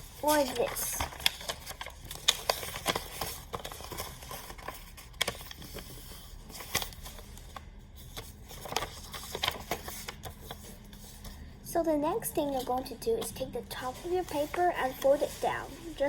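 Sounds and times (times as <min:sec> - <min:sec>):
paper rustling and crinkling: 0:00.0 - 0:11.4, 0:12.5 - 0:16.0.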